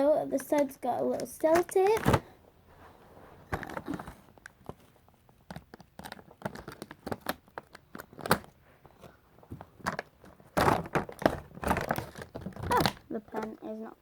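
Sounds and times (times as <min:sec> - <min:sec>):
packaging crinkling: 0:03.5 - 0:13.6.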